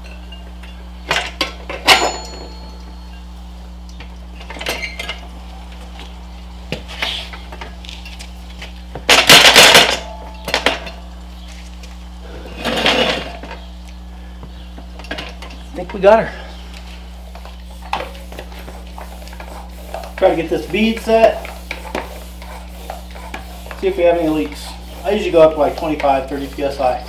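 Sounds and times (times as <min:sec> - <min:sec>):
tire irons clinking on rim: 0:00.0 - 0:27.0.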